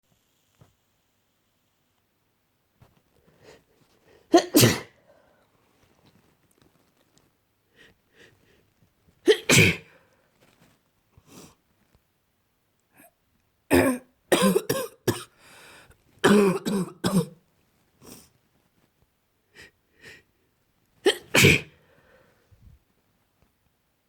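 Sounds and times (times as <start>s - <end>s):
person coughing: 4.3s - 5.0s, 9.3s - 9.9s, 13.7s - 15.3s, 16.2s - 17.4s, 21.1s - 21.8s
person sneezing: 4.3s - 5.0s, 9.3s - 10.0s, 16.2s - 17.3s, 21.0s - 21.8s.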